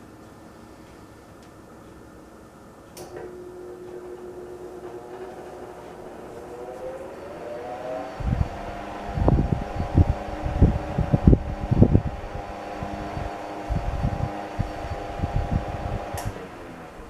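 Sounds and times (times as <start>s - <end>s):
fan motor humming: 0.0s - 17.0s
fan switch click: 16.1s - 16.4s.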